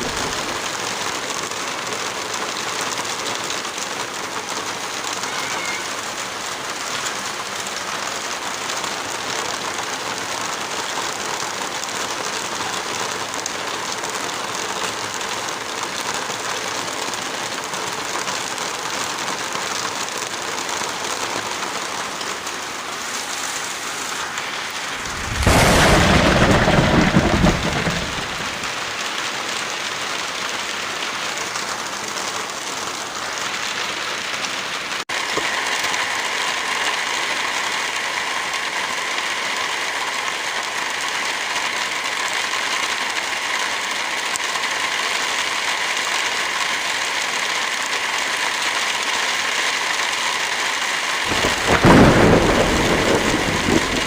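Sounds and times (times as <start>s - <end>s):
thunder clap and rumble: 0.0s - 0.7s, 24.8s - 29.1s, 51.3s - 54.0s
heavy rain falling: 0.0s - 54.0s.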